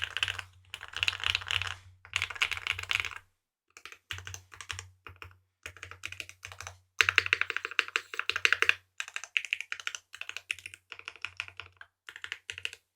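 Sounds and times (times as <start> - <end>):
mechanical keyboard typing: 0.0 - 3.2, 3.8 - 12.8.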